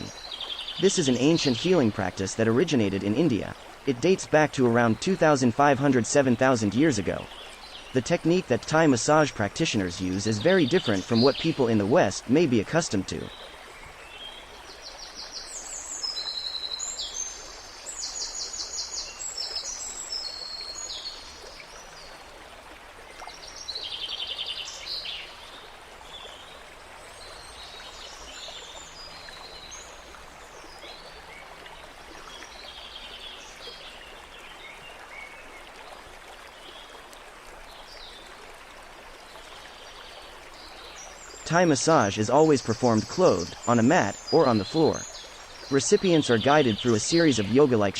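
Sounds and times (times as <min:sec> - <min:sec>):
small birds chirping: 0:00.0 - 0:22.2, 0:39.2 - 0:47.9
flowing water: 0:00.0 - 0:47.9.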